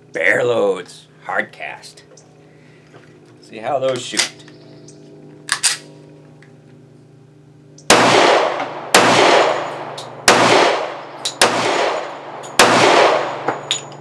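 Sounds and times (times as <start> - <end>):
pistol shots: 7.9 - 13.6.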